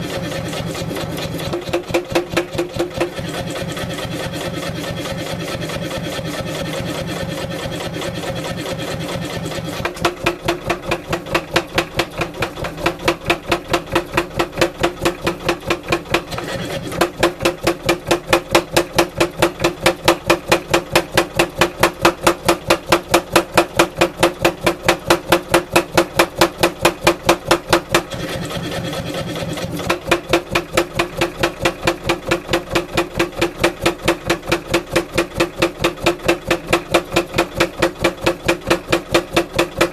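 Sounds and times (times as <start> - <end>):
machine running: 0.0 - 14.7, 15.3 - 20.1, 27.9 - 39.9
power hammer pounding metal: 0.0 - 39.9.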